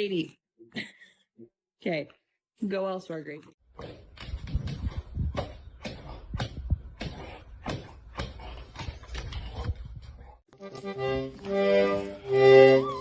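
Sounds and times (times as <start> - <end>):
music with long held notes: 10.6 - 13.0.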